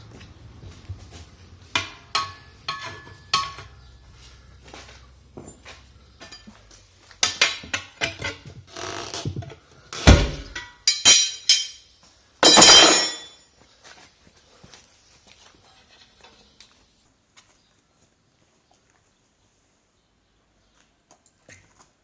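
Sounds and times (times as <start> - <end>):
metal bars clanking on wheel rim: 1.8 - 3.8, 6.2 - 6.6, 7.2 - 11.8, 12.4 - 13.4
heavy thud: 10.1 - 10.6.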